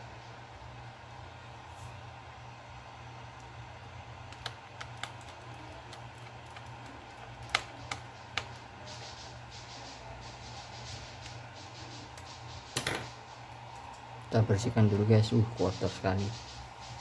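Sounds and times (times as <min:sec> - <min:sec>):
steady low hum: 0:00.0 - 0:17.0
laptop parts clicking: 0:04.2 - 0:08.7.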